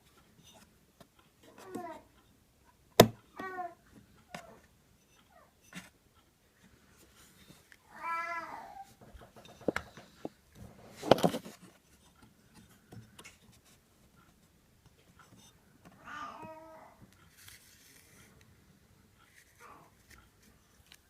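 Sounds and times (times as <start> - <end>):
cat meowing: 7.9 - 8.9, 16.0 - 17.0.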